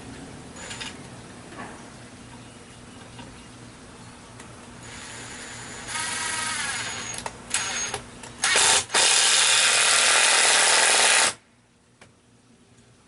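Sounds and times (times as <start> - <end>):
power drill running: 4.8 - 11.4.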